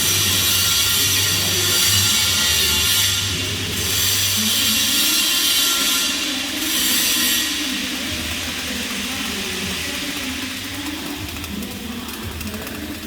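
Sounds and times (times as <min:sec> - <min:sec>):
welding arc crackling hiss: 0:00.0 - 0:13.0.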